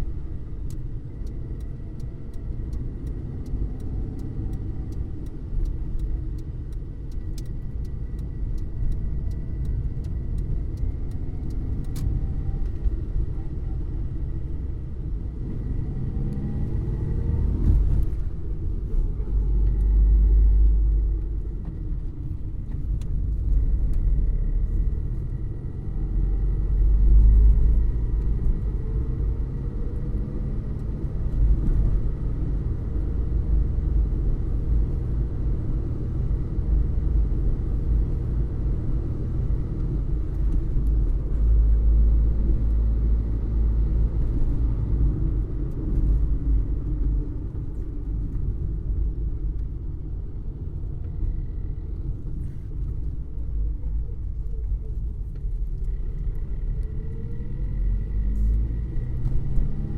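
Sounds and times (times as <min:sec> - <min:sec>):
low road rumble: 0:00.0 - 0:59.9
light ticks: 0:00.4 - 0:13.2
car engine accelerating: 0:15.4 - 0:22.0, 0:51.0 - 0:59.9.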